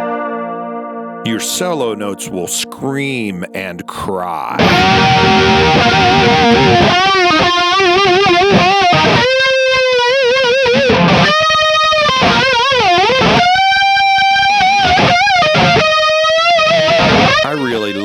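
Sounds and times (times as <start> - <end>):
electric guitar lead with chorus: 0.0 - 18.0.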